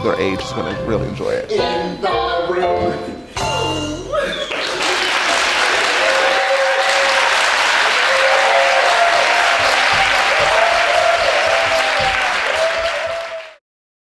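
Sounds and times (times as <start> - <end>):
held musical tones: 0.0 - 4.3
cheering: 4.1 - 13.6
audience applauding: 4.3 - 13.6.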